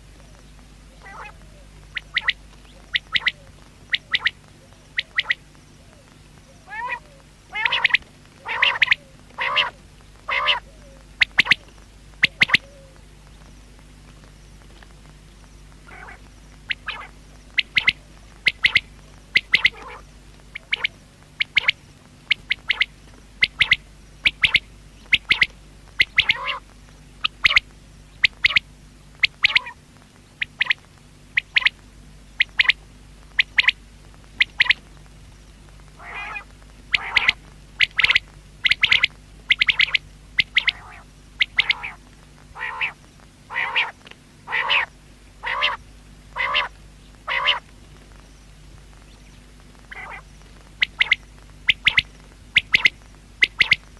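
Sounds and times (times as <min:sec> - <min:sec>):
faint steady hum: 0:00.0 - 0:53.9
quail calling: 0:00.2 - 0:13.0, 0:15.8 - 0:29.8, 0:30.4 - 0:33.8, 0:34.4 - 0:34.9, 0:36.0 - 0:47.7, 0:49.8 - 0:53.9.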